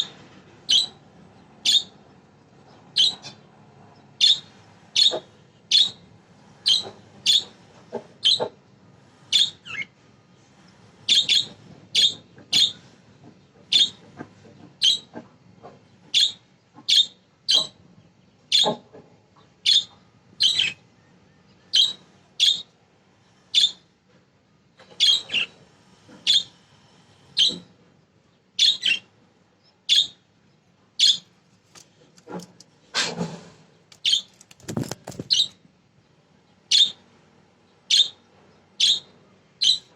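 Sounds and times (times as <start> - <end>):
budgerigars chirping: 0.7 - 1.0, 1.6 - 1.9, 4.2 - 6.0, 6.6 - 7.5, 19.7 - 20.8, 31.0 - 31.2, 38.8 - 39.9
harsh budgerigar call: 4.2 - 6.0.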